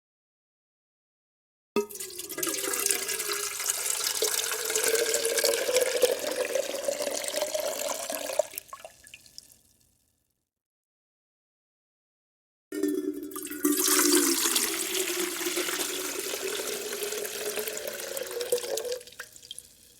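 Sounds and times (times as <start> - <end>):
water pouring into a glass: 1.8 - 9.6, 12.8 - 19.9
water dripping: 1.8 - 9.8, 12.8 - 19.9.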